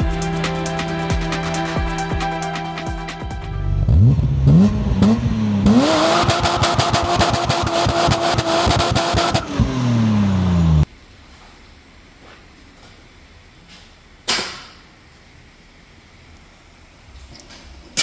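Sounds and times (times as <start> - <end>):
music: 0.0 - 4.4
car engine revving: 3.7 - 10.9.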